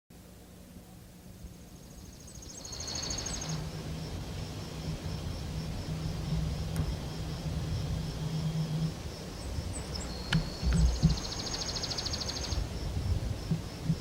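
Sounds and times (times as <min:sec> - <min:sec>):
low hum: 0:00.1 - 0:14.0
low rumble: 0:01.2 - 0:14.0
faint high chirps: 0:01.6 - 0:03.8, 0:06.3 - 0:12.6
songbird singing trill: 0:01.6 - 0:14.0.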